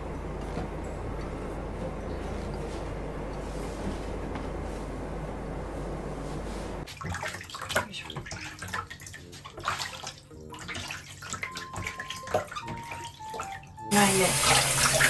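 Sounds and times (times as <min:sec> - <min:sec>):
steady low hum: 0:00.0 - 0:06.9
water splashing in bathtub: 0:06.7 - 0:15.0.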